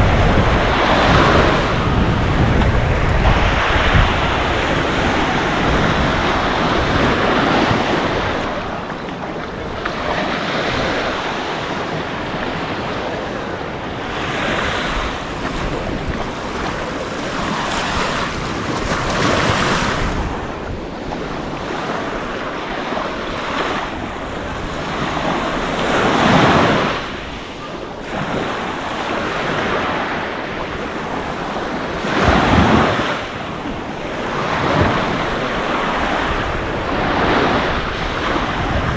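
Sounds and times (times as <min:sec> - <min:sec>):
waves washing onto beach: 0:00.0 - 0:38.9
wind on microphone: 0:00.0 - 0:38.9.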